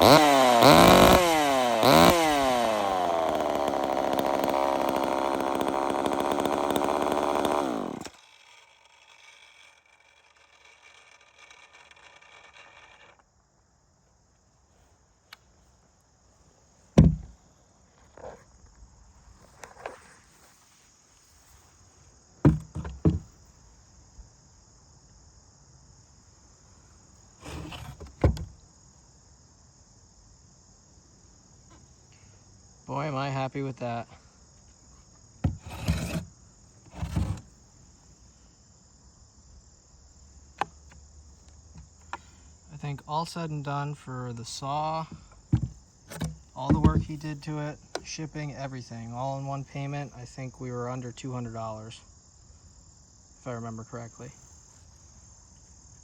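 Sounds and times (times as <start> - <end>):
chainsaw revving and idling: 0.0 - 13.2, 35.4 - 36.3, 36.9 - 37.5
crickets chirping: 0.0 - 56.0
short knocks and thumps: 17.0 - 17.4, 22.4 - 23.3, 35.4 - 36.3, 45.1 - 47.3.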